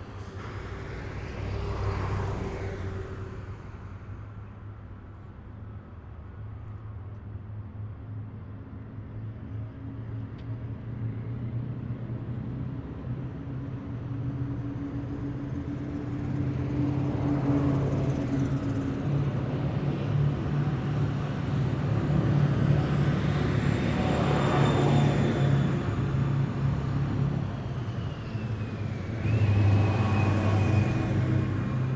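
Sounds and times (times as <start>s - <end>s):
heavy vehicle engines rumbling: 0.0s - 4.5s, 14.1s - 31.9s
road noise: 0.0s - 7.4s, 9.0s - 31.9s.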